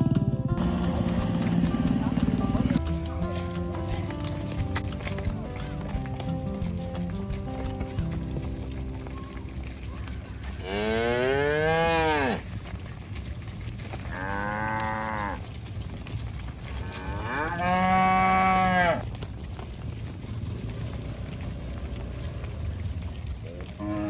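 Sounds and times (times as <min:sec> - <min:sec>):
cattle mooing: 0:10.0 - 0:12.5, 0:14.0 - 0:15.5, 0:16.8 - 0:19.0, 0:20.7 - 0:24.0.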